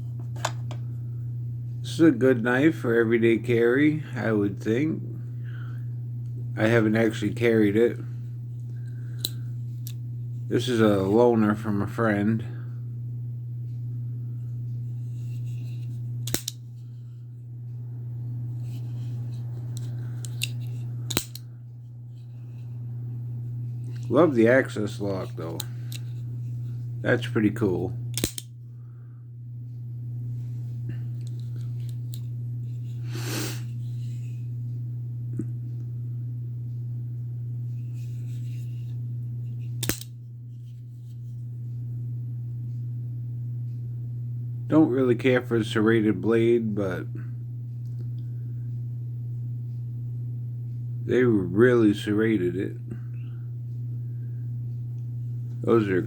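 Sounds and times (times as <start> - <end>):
steady low hum: 0.0 - 56.0
knife blade clicking open and shut: 16.3 - 16.6, 20.3 - 21.4, 28.2 - 28.5, 39.8 - 40.1.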